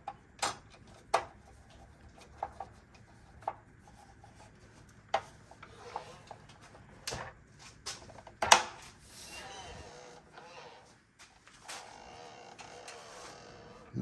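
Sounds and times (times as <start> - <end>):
plastic parts clicking and knocking: 0.0 - 3.6.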